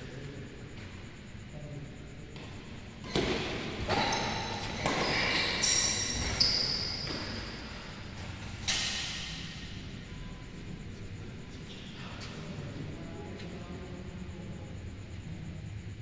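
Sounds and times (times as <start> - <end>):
shoe squeaks on court floor: 3.1 - 7.8.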